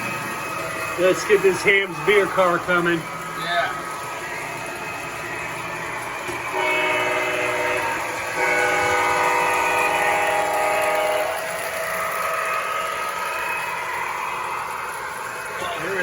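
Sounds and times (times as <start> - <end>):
model train running on track: 0.0 - 16.0
model train horn blasts: 6.4 - 13.6.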